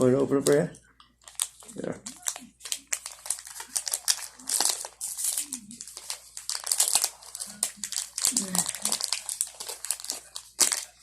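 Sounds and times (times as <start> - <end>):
plastic wrapper crinkling: 0.0 - 11.0.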